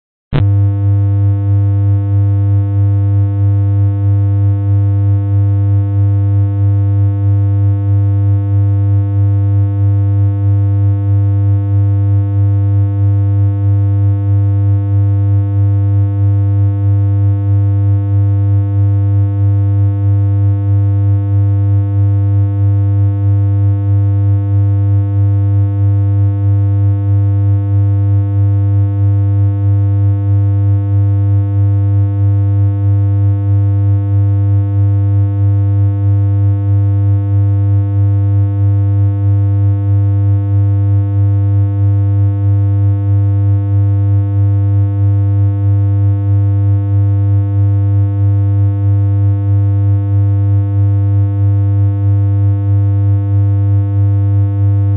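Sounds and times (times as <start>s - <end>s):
synthesized electronic hum: 0.3s - 1.0s.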